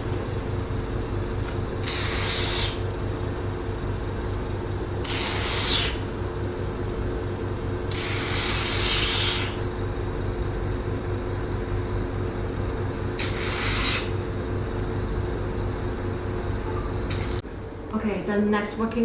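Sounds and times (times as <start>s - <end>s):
vacuum pump humming: 0.0s - 17.9s.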